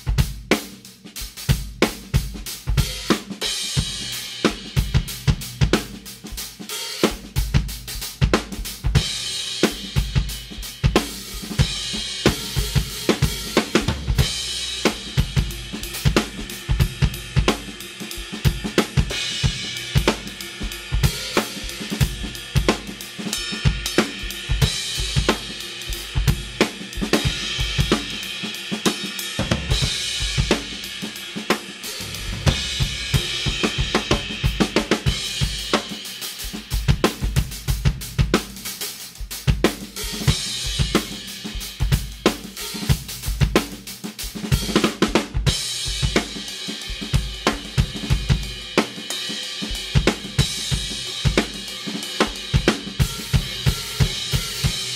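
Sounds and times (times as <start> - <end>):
drum kit groove: 0.0 - 54.9
cymbal crashes: 31.7 - 35.7.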